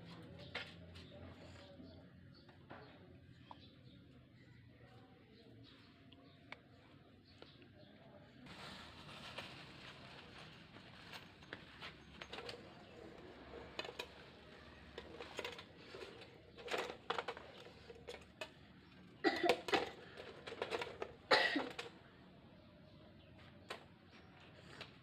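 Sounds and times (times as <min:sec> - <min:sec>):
metal tools clinking and clattering: 0:12.0 - 0:18.5.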